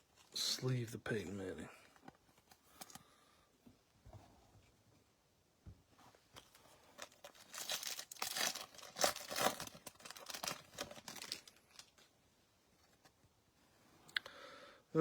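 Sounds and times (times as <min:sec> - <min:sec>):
plastic packaging crinkling: 0:06.4 - 0:12.1.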